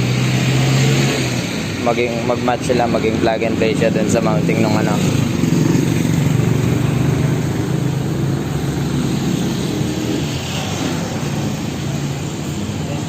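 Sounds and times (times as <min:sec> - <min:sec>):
mechanical drone: 0:03.0 - 0:13.0.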